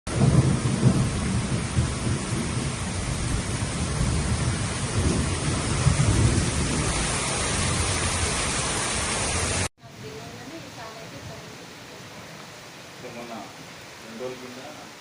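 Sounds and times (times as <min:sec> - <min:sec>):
gusting wind rumble: 0:00.1 - 0:10.4
heavy rain pouring: 0:00.1 - 0:15.0.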